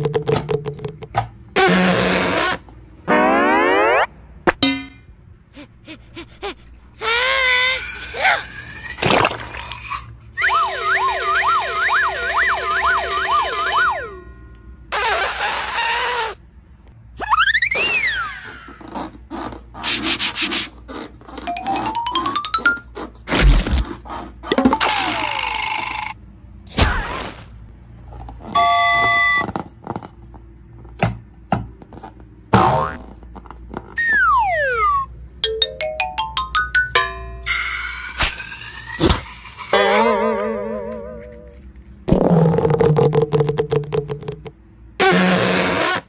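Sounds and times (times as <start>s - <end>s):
warbling siren-like whistle: 10.4s - 14.3s, 34.0s - 35.1s.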